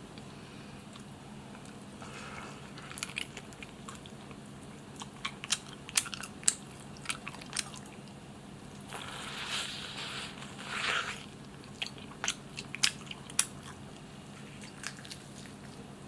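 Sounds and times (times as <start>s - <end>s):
wet chewing: 0.9s - 16.0s
crisp clicks of biting: 2.8s - 8.2s, 11.5s - 15.9s.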